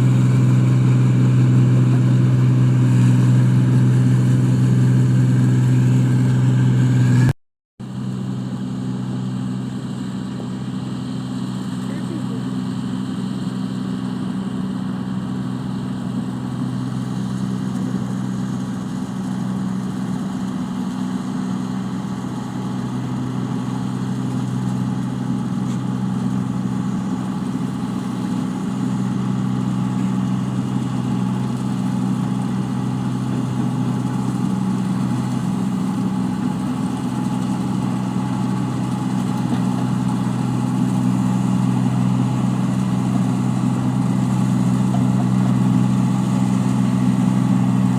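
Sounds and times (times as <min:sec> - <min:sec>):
machine engine humming: 0:00.0 - 0:47.9.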